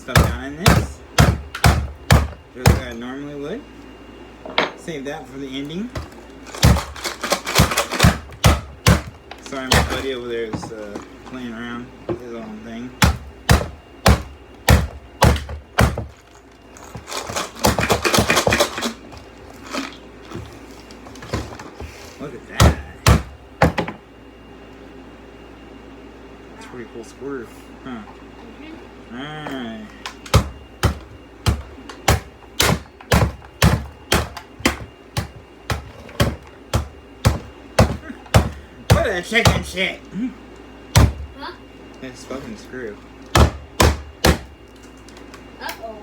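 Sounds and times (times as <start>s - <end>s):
hammer knocking on vacuum cleaner: 0.0s - 3.0s, 7.6s - 11.0s, 13.0s - 16.2s, 22.6s - 24.0s, 30.3s - 39.8s, 40.9s - 41.3s, 43.3s - 44.5s
small hard objects clattering: 16.1s - 21.6s.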